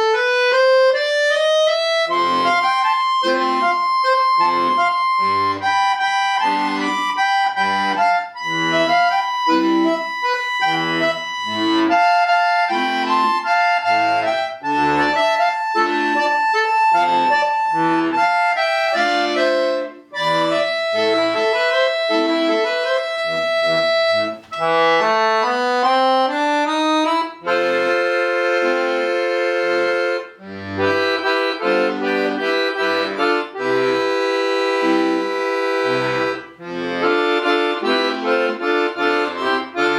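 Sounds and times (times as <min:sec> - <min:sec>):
accordion melody: 0:00.0 - 0:39.9.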